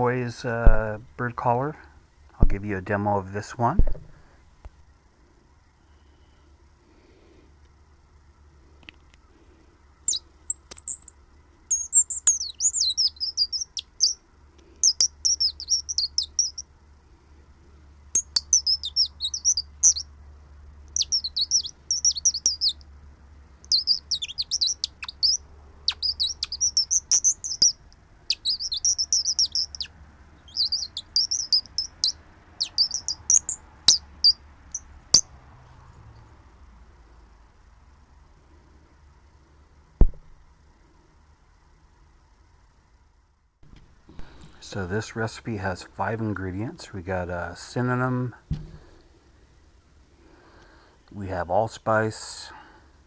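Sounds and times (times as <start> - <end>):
warbling bird call chirps: 10.1 - 11.1, 11.7 - 14.2, 14.8 - 16.6, 18.2 - 20.1, 20.9 - 22.8, 23.7 - 34.8.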